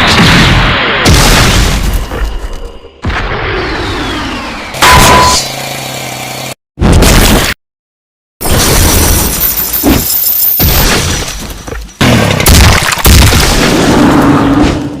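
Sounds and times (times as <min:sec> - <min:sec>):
crashing and booming effects: 0:00.0 - 0:04.2.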